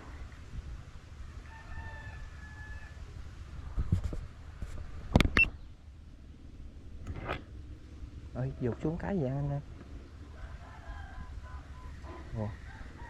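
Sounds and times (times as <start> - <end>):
rooster crowing: 1.2 - 3.0, 10.3 - 13.0.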